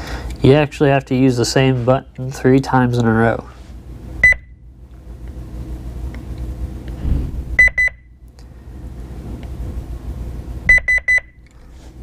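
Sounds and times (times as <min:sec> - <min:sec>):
low steady hum: 0:00.0 - 0:12.0
alarm panel beeping: 0:04.2 - 0:04.5, 0:07.6 - 0:08.1, 0:10.7 - 0:11.4.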